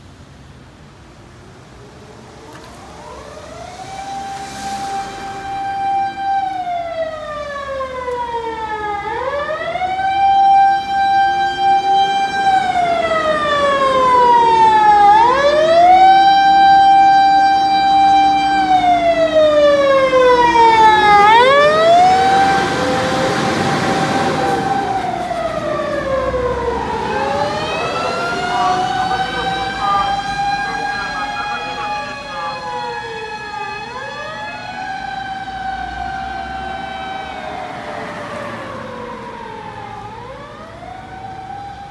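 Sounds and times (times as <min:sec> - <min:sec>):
fire engine siren wailing: 0:01.8 - 0:41.9
low motor siren wail: 0:01.8 - 0:41.9
rush of noise: 0:27.0 - 0:32.9.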